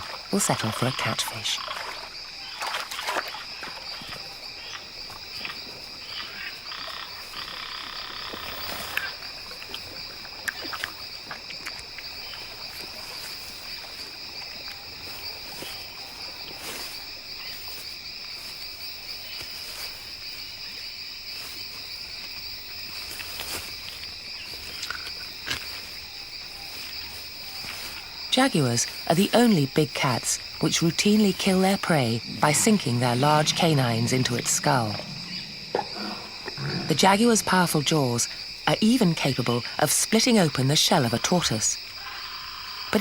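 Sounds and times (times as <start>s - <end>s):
frog calling: 0.0s - 17.7s, 24.4s - 43.0s.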